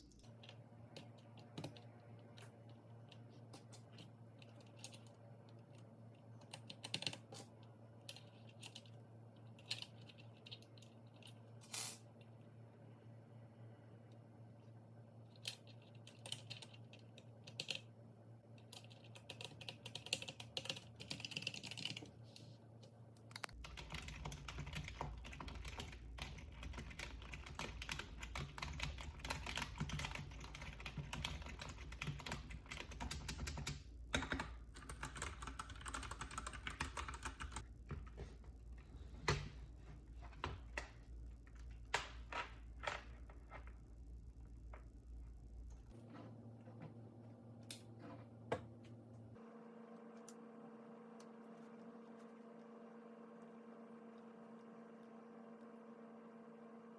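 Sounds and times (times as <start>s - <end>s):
mechanical keyboard typing: 0.2s - 2.5s, 6.4s - 11.3s, 15.4s - 17.9s, 18.6s - 22.1s, 23.4s - 37.7s.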